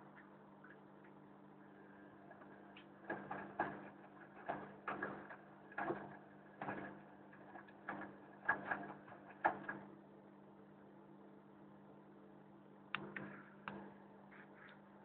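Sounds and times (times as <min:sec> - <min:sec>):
washing machine motor hum: 0:00.0 - 0:15.0.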